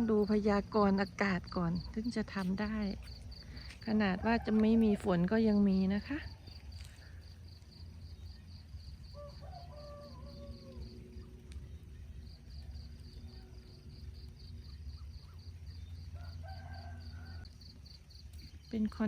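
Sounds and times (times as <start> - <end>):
insect chirping: 0.0 - 19.0
distant rooster crowing: 3.9 - 5.3, 9.0 - 11.1, 16.1 - 17.6.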